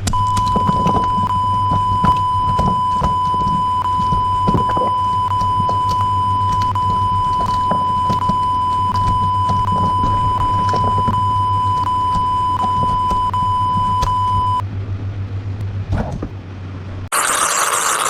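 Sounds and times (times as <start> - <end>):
clicks: 0.0 - 14.3
low hum: 0.0 - 17.1
high-pitched beep tone: 0.1 - 14.6.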